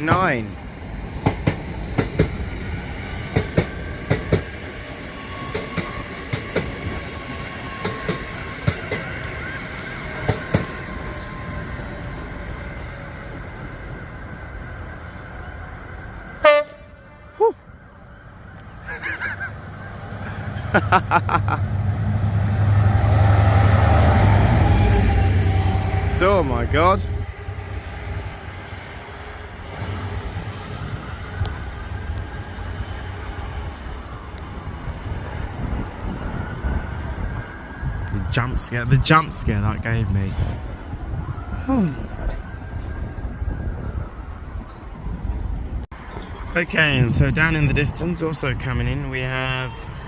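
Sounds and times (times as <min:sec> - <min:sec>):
train rumbling: 0:00.0 - 0:50.0
loud train horn blast: 0:16.4 - 0:17.4.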